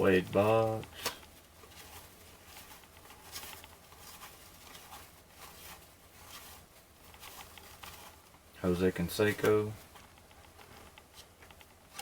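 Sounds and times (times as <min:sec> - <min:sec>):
cards rustling and scraping: 0:00.1 - 0:08.4.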